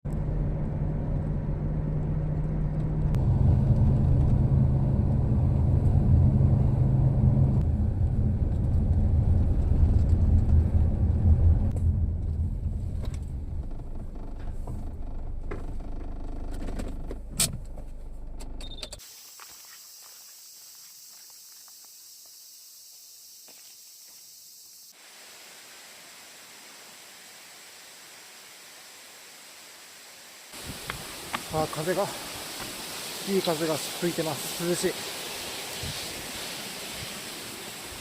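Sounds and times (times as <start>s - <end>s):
car engine and road rumble: 0.0s - 19.0s.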